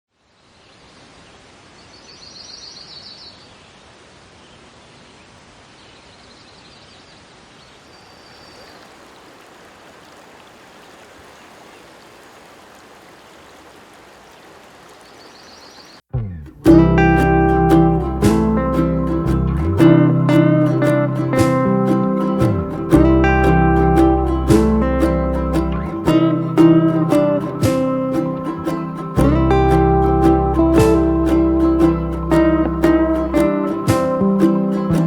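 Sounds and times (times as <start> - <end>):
small birds chirping: 0.3 - 16.1
river rushing: 7.7 - 16.0, 16.7 - 35.0
plucked acoustic guitar music: 16.1 - 35.0.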